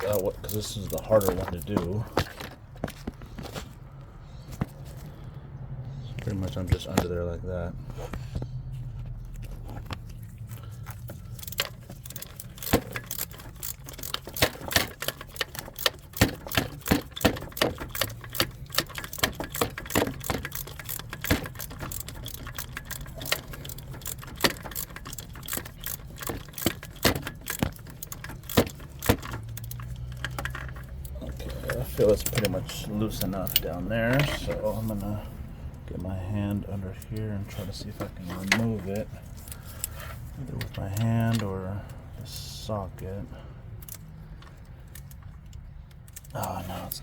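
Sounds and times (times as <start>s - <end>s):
hand ratchet clicking: 0.0s - 2.5s, 10.9s - 35.2s.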